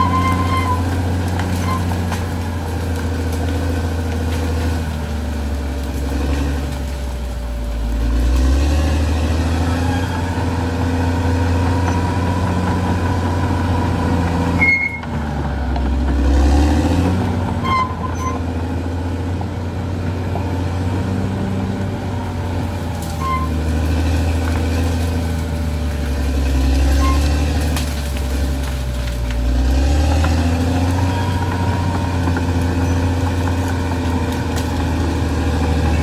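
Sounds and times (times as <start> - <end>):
brief high squeaks: 0.0 - 0.9, 14.6 - 15.1, 27.0 - 27.4
bulldozer diesel engine running: 0.0 - 36.0.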